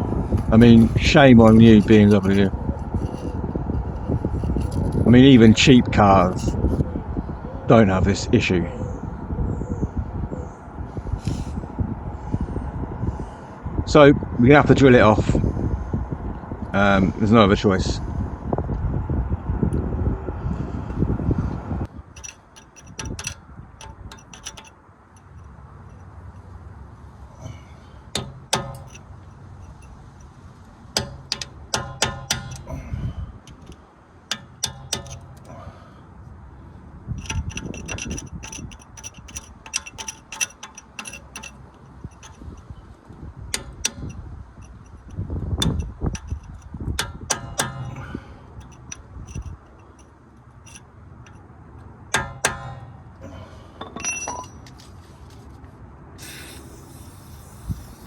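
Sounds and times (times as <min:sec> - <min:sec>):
metal tools clinking on metal: 0:00.4 - 0:03.4, 0:22.0 - 0:26.1, 0:28.1 - 0:30.4, 0:31.0 - 0:35.8, 0:37.2 - 0:55.0.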